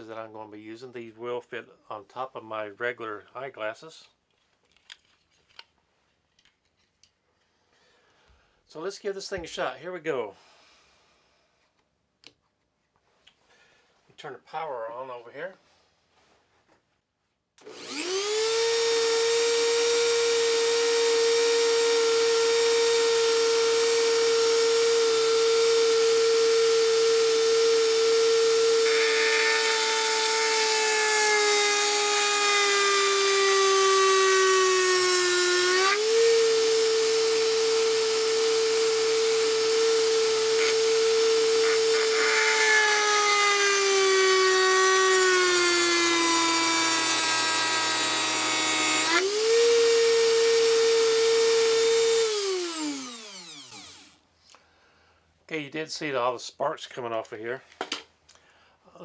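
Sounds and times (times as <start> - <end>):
rotary tool high whine: 17.6 - 54.2.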